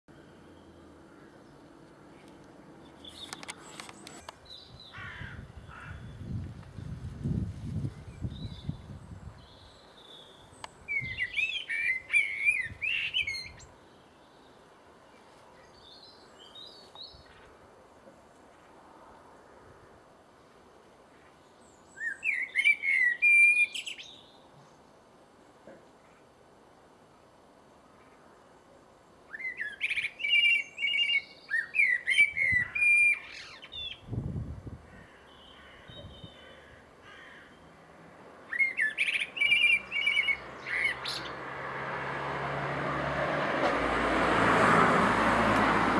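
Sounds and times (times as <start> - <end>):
blackbird singing: 8.1 - 14.5, 21.8 - 24.4, 29.3 - 34.1, 35.0 - 37.7, 38.5 - 41.4
blackbird warbling: 38.5 - 41.3.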